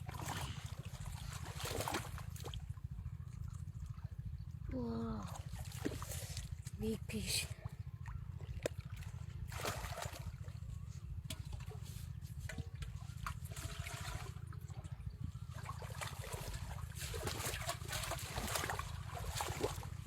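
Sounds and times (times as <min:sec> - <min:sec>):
water splashing and trickling: 0:00.0 - 0:20.0.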